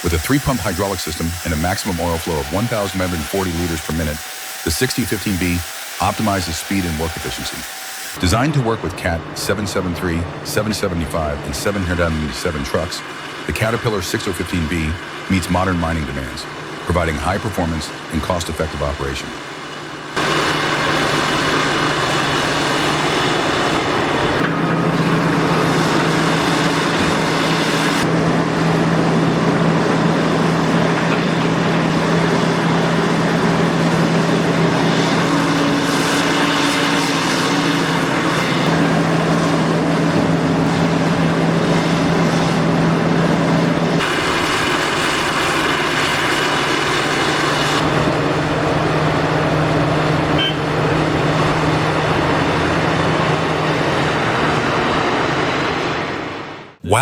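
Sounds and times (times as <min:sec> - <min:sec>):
diesel engine running: 0:00.0 - 0:15.4.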